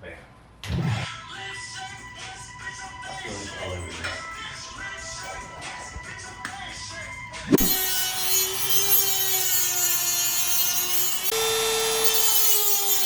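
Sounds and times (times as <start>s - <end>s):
power tool whining: 7.5s - 13.0s.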